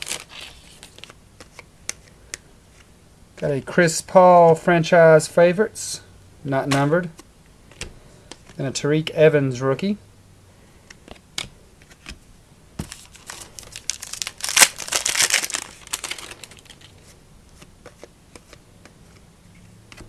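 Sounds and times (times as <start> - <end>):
wrapper tearing and crinkling: 0.0 - 1.1, 12.9 - 17.0
cards clicking and tapping: 15.1 - 19.3.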